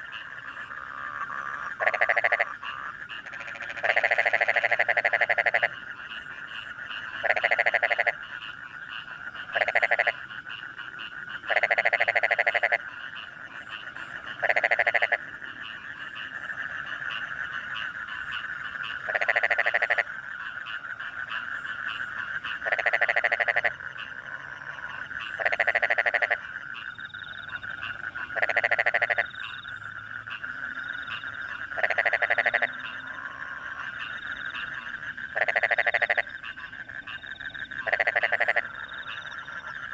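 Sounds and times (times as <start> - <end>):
chorus of frogs and crickets: 0.0 - 39.9
frog rasping croaks: 0.0 - 39.9.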